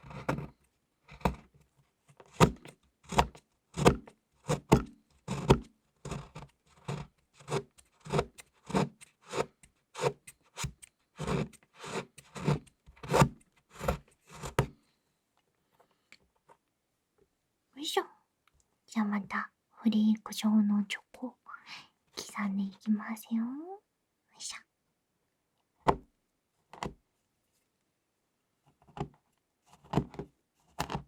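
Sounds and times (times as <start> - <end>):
chocolate being shaved: 2.3 - 14.6.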